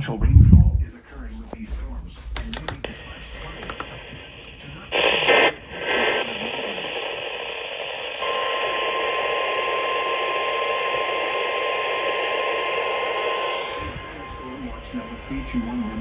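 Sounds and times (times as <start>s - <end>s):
radio static hiss: 0.0s - 16.0s
steady alarm tone: 8.2s - 16.0s.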